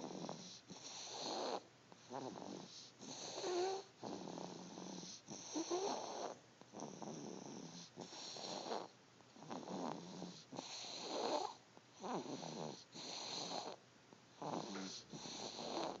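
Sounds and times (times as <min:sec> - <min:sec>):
baby snoring: 0:00.0 - 0:13.8, 0:14.4 - 0:16.0.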